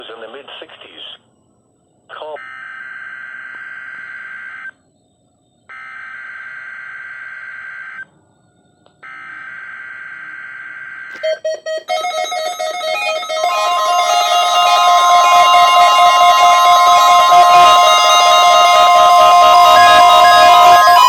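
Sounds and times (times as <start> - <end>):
steady warning alarm tone: 2.4 - 4.7, 5.7 - 8.0, 9.0 - 21.0
multi-pitch alert tone: 11.1 - 21.0.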